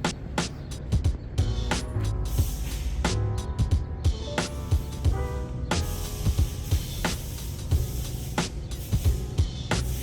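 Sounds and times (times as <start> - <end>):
bass drum beat: 0.8 - 4.3.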